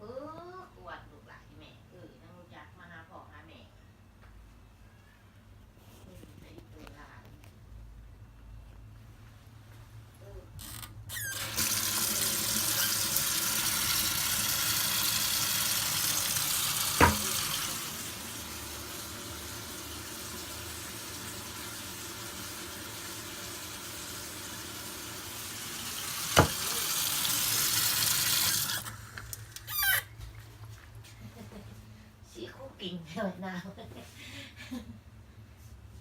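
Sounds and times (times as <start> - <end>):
water running from a tap: 11.1 - 30.0.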